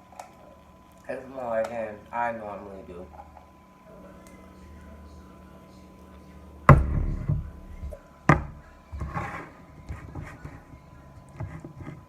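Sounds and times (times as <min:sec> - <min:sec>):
sharp knocks: 0:06.7 - 0:08.6.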